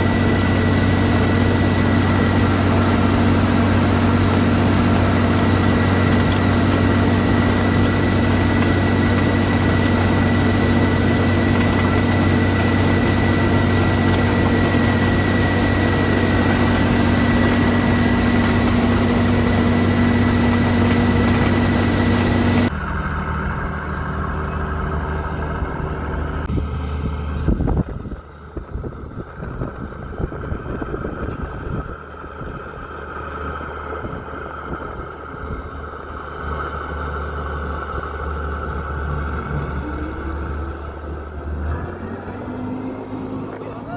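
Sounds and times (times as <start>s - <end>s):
thin steady whine: 0.0s - 26.5s
combine harvester engine running: 0.0s - 43.9s
distant engine rumble: 0.0s - 43.9s.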